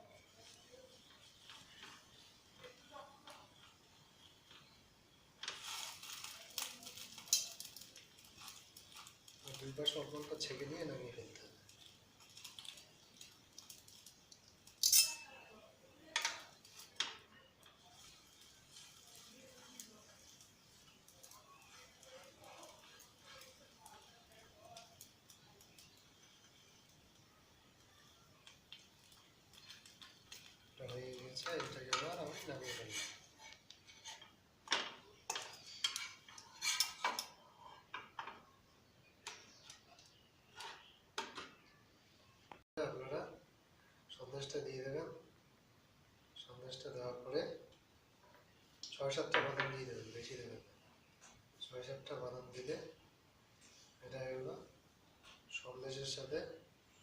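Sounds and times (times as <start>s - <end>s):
metal spatula clinking on pan: 14.7s - 15.5s
metal utensil scraping a frying pan: 18.0s - 24.1s, 31.3s - 34.4s, 35.2s - 37.9s.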